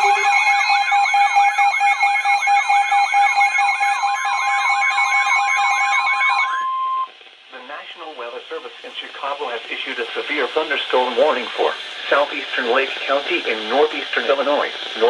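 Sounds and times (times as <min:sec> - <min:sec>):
steady alert tone: 0:00.0 - 0:00.9
electronic siren sweeping: 0:00.0 - 0:07.1.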